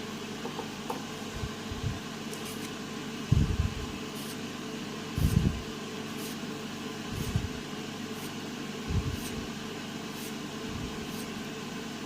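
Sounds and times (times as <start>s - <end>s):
fan hum: 0.0s - 12.0s
hand file scraping metal: 11.0s - 11.4s.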